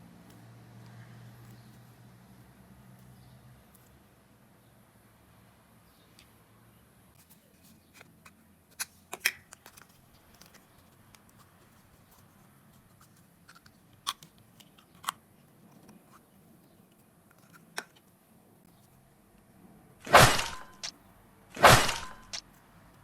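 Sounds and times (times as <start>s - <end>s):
quiet handling of plastic toys: 7.1s - 19.5s.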